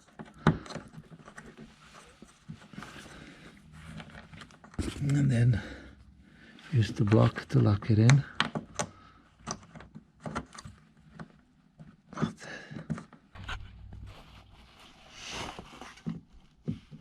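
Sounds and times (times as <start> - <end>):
plastic clips clicking and scraping: 0.0 - 1.7, 7.8 - 11.4
low rumble: 13.4 - 15.2.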